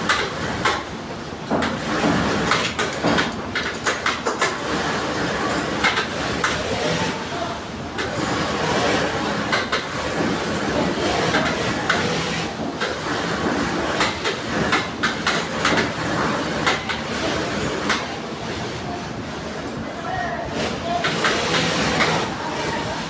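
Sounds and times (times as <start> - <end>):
sewing machine running: 20.5 - 22.4.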